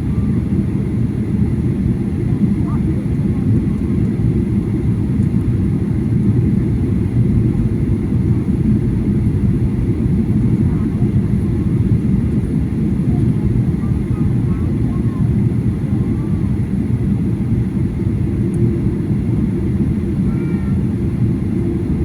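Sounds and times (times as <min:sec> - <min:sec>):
jet cabin engine drone: 0:00.0 - 0:22.0.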